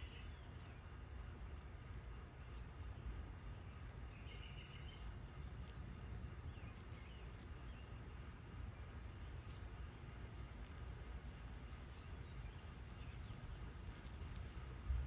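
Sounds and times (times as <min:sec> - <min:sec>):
low background rumble: 0:00.0 - 0:15.0
bird chirps: 0:04.0 - 0:05.1.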